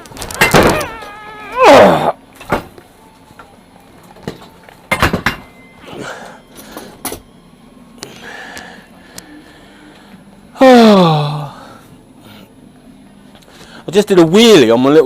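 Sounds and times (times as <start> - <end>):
body crashing into shed wall: 0.2 - 1.0
man's loud cry: 0.4 - 2.2.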